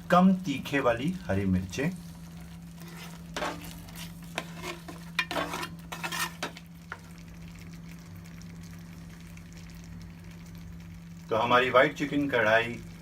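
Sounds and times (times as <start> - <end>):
low sizzle: 0.0 - 13.0
spoon scraping a pan: 2.7 - 7.1.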